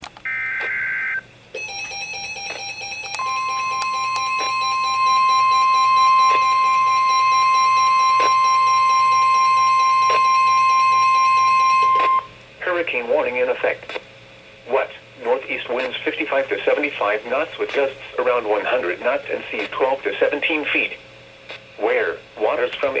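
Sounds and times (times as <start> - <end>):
static clicks: 0.0 - 0.8, 1.6 - 7.0, 8.1 - 8.6, 13.8 - 14.1
pulsing electronic beep alarm: 0.3 - 12.3
steady warning alarm tone: 0.3 - 12.4
two-tone data screech: 1.6 - 12.3.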